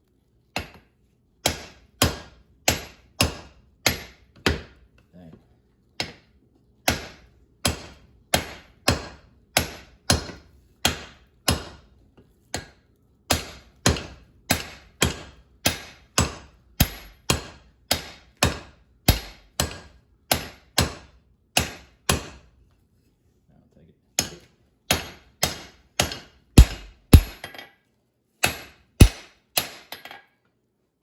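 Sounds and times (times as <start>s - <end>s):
hammer blows on hot steel: 26.6s - 27.4s.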